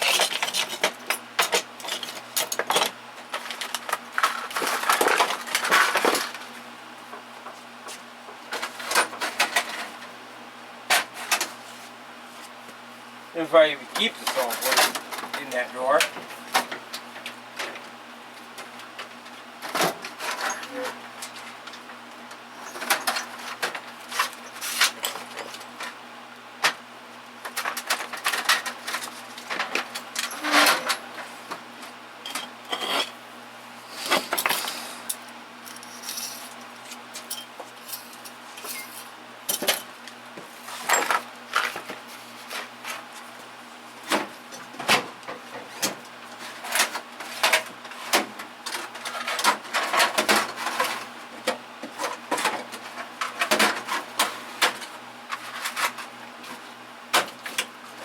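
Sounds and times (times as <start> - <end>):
metal tools clinking: 35.7 - 36.5.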